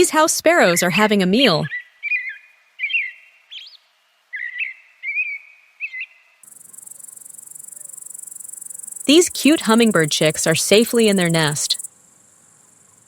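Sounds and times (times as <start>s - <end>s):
high-pitched pulsing buzz: 6.5s - 11.9s
sparrows chirping: 6.5s - 11.9s.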